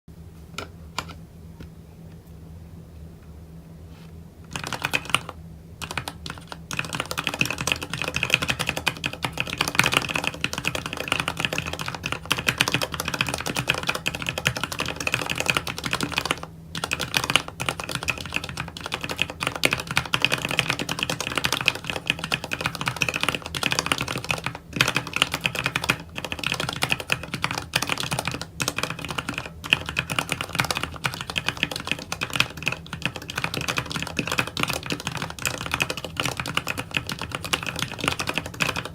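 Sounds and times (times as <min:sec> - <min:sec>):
fast mechanical keyboard typing: 0:04.5 - 0:38.9.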